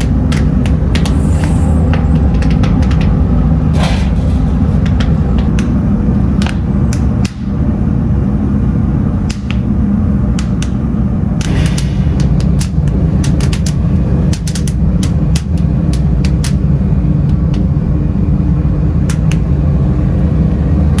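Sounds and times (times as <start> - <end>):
sharp clicks and knocks: 0.0 - 7.7, 9.2 - 17.8, 19.1 - 19.5
heavy factory machinery rumbling: 0.0 - 21.0.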